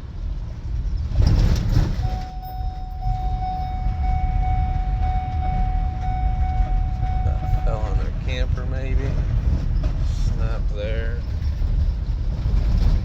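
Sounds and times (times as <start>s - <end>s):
vehicle driving rumble: 0.0s - 13.0s
high-pitched tone: 2.0s - 8.3s.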